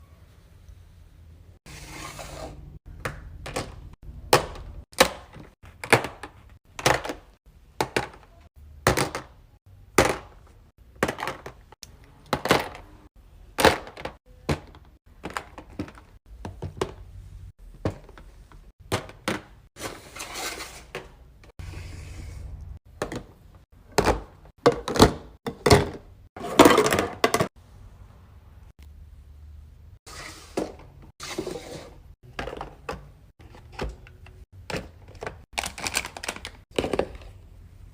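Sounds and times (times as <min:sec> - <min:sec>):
plastic toys rattling: 0:35.0 - 0:37.4.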